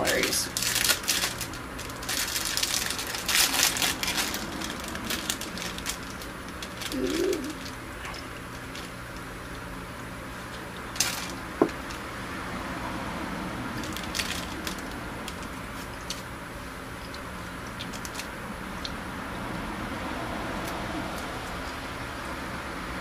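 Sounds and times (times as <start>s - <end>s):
crunching and chewing cookie: 0.5s - 12.1s, 13.7s - 19.6s
wavering low hum: 1.3s - 23.0s.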